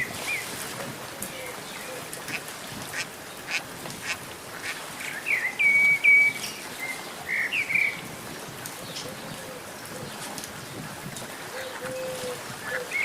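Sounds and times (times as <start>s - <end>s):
steady hiss of water: 0.0s - 13.0s.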